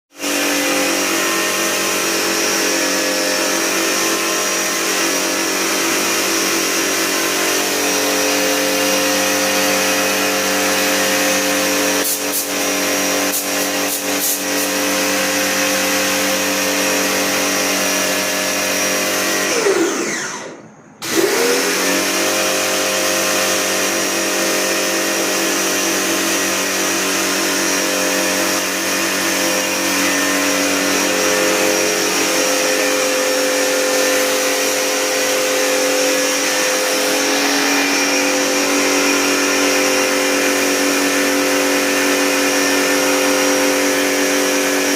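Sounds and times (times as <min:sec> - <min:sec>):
electric motor machine hissing: 0:25.2 - 0:44.9.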